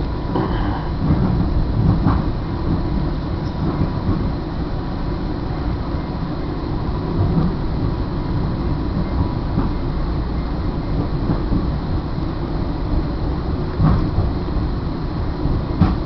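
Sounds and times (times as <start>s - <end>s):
train rumbling inside coach: 0.0s - 16.0s.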